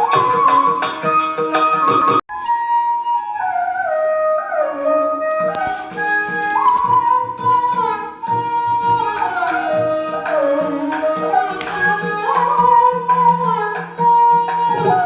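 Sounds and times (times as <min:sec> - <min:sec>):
sliding melody of held notes: 0:00.0 - 0:15.0
hand drum strokes: 0:05.4 - 0:15.0.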